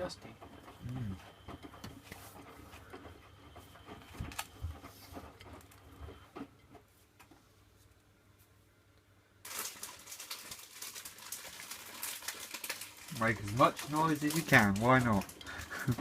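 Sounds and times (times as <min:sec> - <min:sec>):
washing machine drum tumbling laundry: 0:00.0 - 0:07.0, 0:11.0 - 0:16.0.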